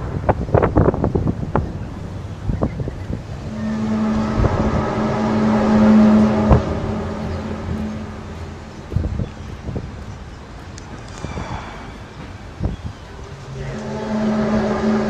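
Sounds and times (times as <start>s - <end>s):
droning tone from the sky: 0.0s - 15.0s
traffic: 0.0s - 15.0s
wind: 0.0s - 15.0s.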